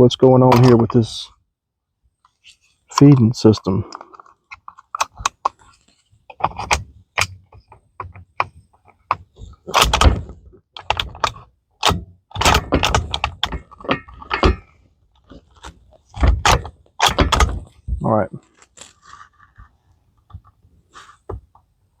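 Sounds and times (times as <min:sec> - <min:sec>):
rifle bolt metallic clicks and clacks: 0:00.5 - 0:01.0, 0:02.9 - 0:17.7.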